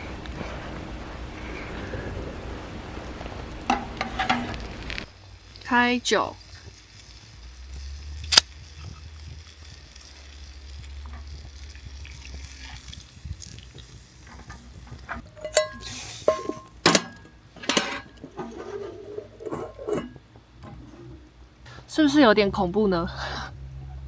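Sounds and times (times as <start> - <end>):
sizzling in hot pan: 0.8 - 17.6
bottle and cookware clinking: 15.2 - 18.9.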